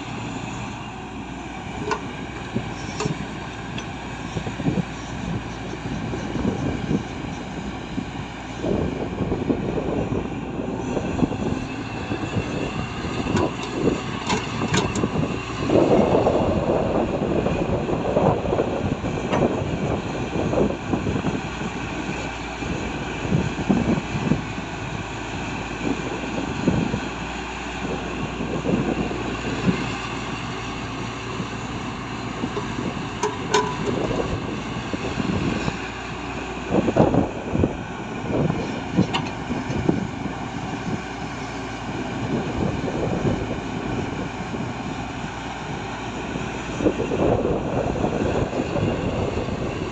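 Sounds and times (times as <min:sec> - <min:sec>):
excavator diesel engine running: 0:00.0 - 0:49.9
knocks and clunks: 0:32.6 - 0:34.0.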